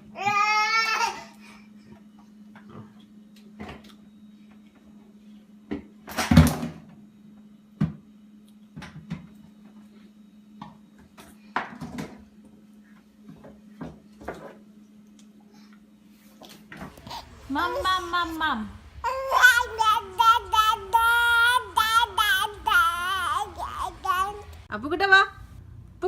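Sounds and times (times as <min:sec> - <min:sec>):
steady low hum: 0:12.2 - 0:26.0.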